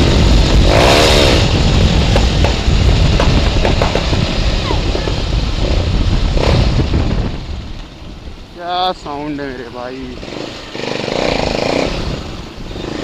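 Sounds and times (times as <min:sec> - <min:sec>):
sharp exhaust pops: 0:00.0 - 0:08.0
motorcycle deep rumble: 0:00.0 - 0:13.0.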